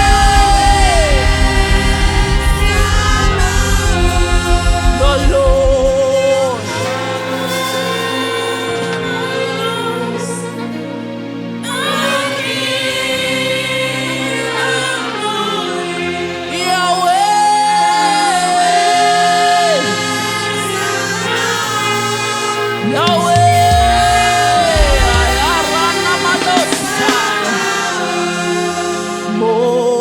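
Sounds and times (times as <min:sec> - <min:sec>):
band accompaniment with bass: 0:00.0 - 0:06.8, 0:22.6 - 0:27.5
choir singing: 0:00.0 - 0:30.0.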